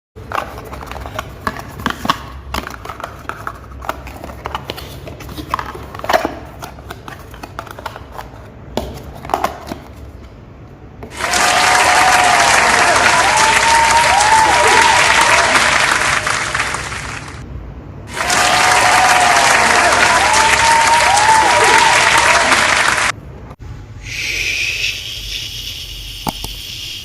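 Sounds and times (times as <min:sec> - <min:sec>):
loud applause: 0:11.1 - 0:17.4, 0:18.1 - 0:23.2.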